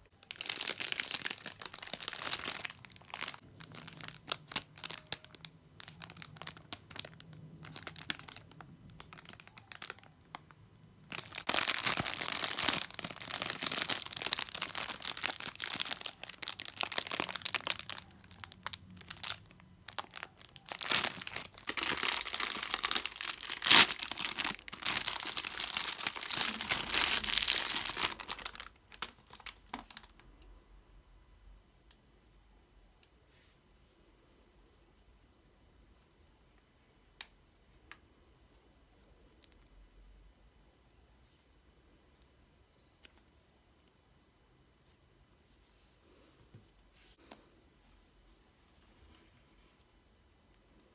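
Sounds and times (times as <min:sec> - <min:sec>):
packaging crinkling and tearing: 0:00.1 - 0:30.3.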